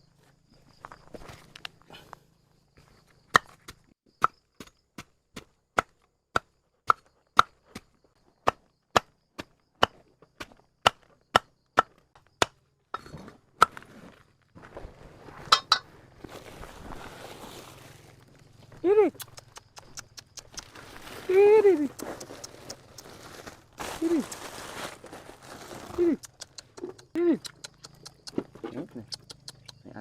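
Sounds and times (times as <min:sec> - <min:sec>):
rustling: 0:13.8 - 0:18.5, 0:20.4 - 0:26.3.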